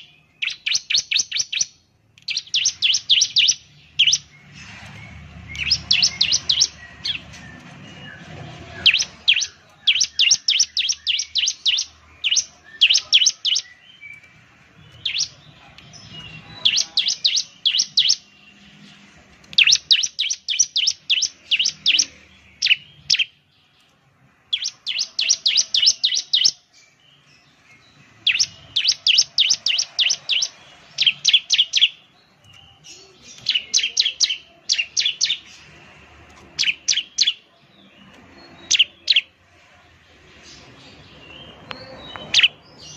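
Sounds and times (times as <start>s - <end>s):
bird chirping: 0.0s - 42.9s.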